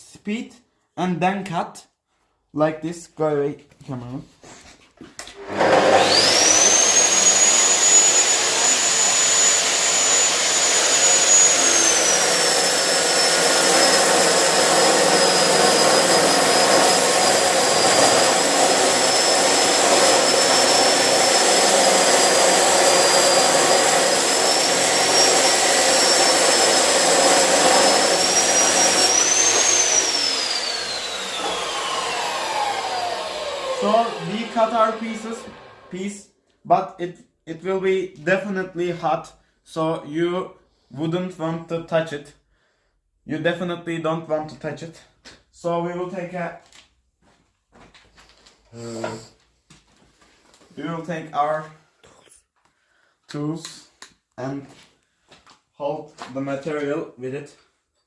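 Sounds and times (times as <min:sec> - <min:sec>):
metal cut-off saw grinding: 0:05.4 - 0:36.0.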